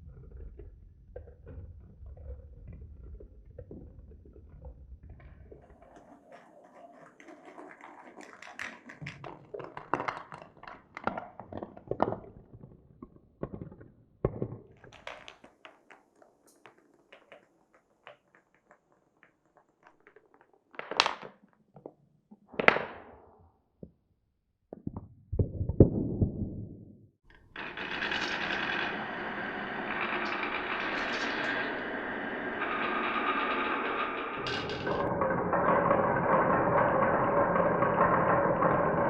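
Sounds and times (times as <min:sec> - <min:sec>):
marbles rattling down wooden run: 0:27.4 - 0:39.0.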